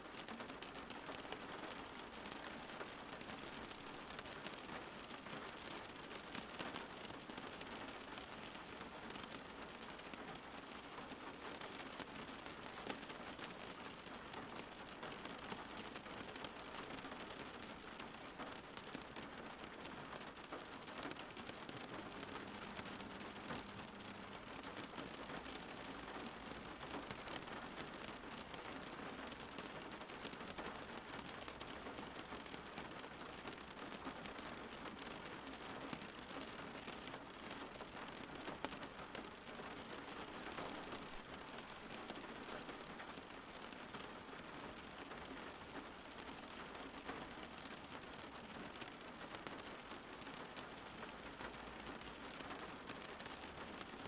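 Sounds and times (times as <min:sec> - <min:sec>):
steady rain patter: 0:00.0 - 0:54.0.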